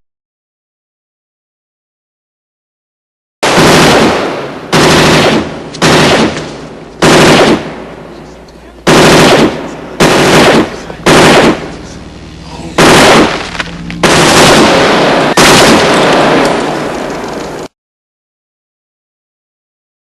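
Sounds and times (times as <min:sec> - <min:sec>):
machine gun bursts: 0:03.4 - 0:07.7, 0:08.8 - 0:12.0, 0:12.8 - 0:17.7
gunfire echo: 0:03.4 - 0:12.0, 0:12.8 - 0:17.6.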